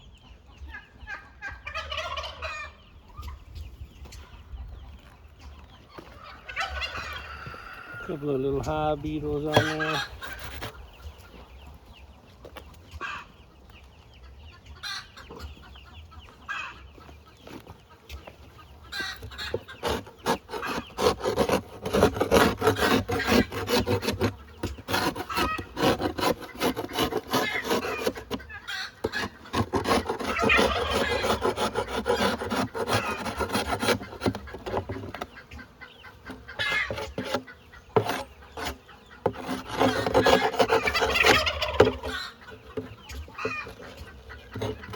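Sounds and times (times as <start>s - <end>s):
chickens clucking: 0.0s - 44.9s
wooden rubbing and scraping: 5.0s - 10.8s, 19.0s - 35.5s, 36.2s - 44.9s.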